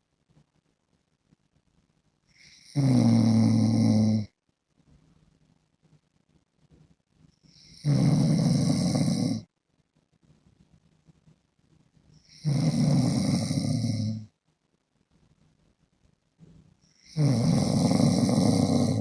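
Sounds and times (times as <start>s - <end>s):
quiet breathing: 2.2s - 6.0s, 6.6s - 14.4s, 16.4s - 19.0s
man snoring loudly: 2.5s - 4.3s, 7.6s - 9.5s, 12.3s - 14.3s, 17.1s - 19.0s.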